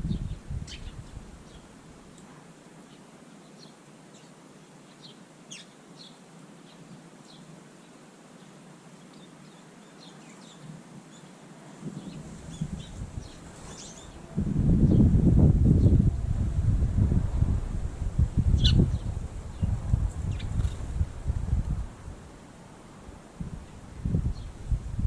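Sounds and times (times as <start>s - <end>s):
small birds chirping: 0.0s - 2.2s, 2.8s - 14.3s, 18.5s - 21.0s.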